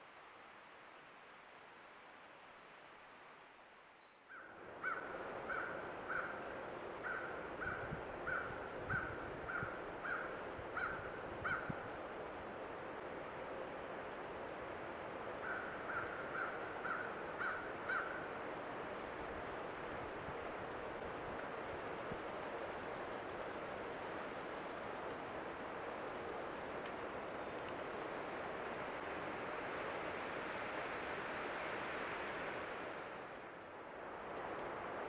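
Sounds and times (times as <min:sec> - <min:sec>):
creek water rushing: 0:12.0 - 0:35.0.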